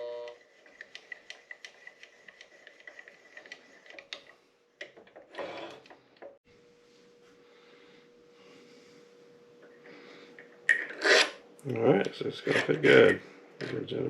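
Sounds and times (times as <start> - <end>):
metal scrape: 10.8 - 11.4.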